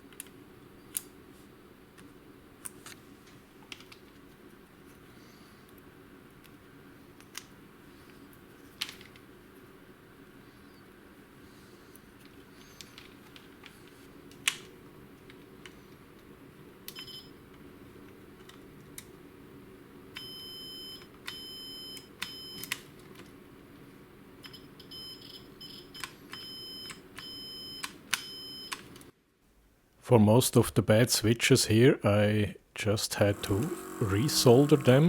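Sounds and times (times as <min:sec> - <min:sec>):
continuity tester beeps: 0:20.2 - 0:22.6, 0:24.5 - 0:28.8.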